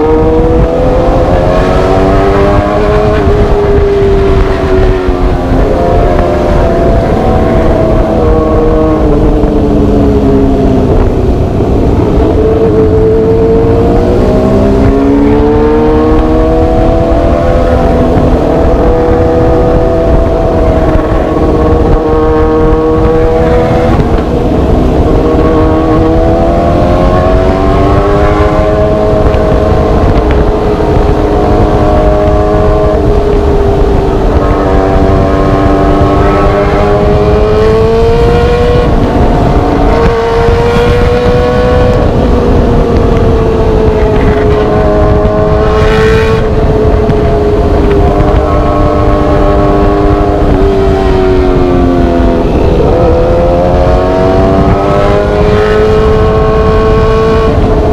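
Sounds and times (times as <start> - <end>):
motorcycle engine: 0.0 - 57.9
wind rush: 0.0 - 57.9.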